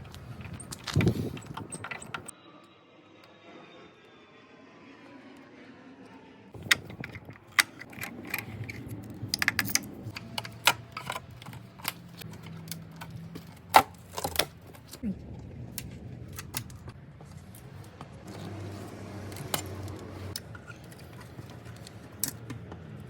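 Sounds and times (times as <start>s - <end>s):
sharp clicks and knocks of tools: 6.6s - 15.0s, 19.2s - 23.0s.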